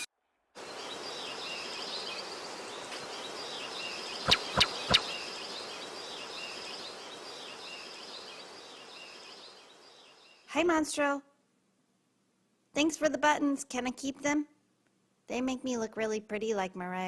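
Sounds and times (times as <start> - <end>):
small birds chirping: 0.6 - 10.6
steady outdoor hiss: 0.6 - 15.3
sharp clicks: 4.3 - 5.2.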